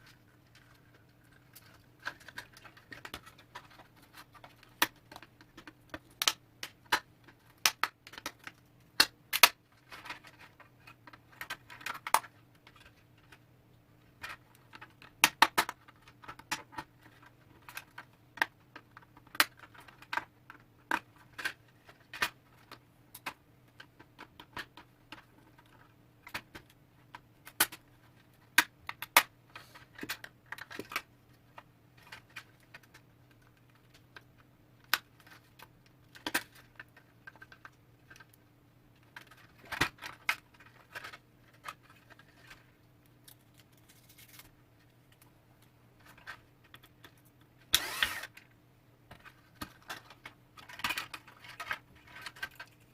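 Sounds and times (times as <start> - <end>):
plastic and metal parts clicking: 14.2 - 38.4, 49.1 - 52.9.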